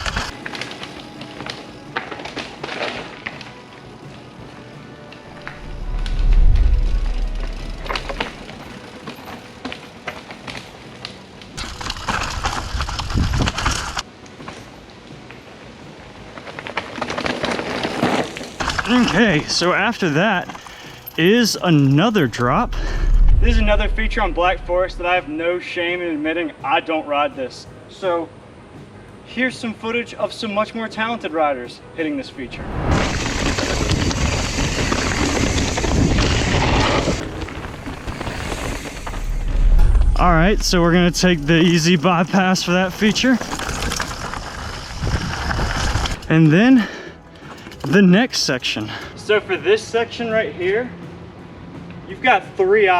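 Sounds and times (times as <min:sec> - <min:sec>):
bike clicks and rattles: 0:00.0 - 0:03.4, 0:06.8 - 0:14.7, 0:16.4 - 0:22.0, 0:33.3 - 0:46.4, 0:47.4 - 0:48.0
tyres on rock and dirt: 0:05.2 - 0:14.7, 0:16.3 - 0:25.2, 0:32.8 - 0:49.0
wind on microphone: 0:22.6 - 0:25.3, 0:44.6 - 0:46.2.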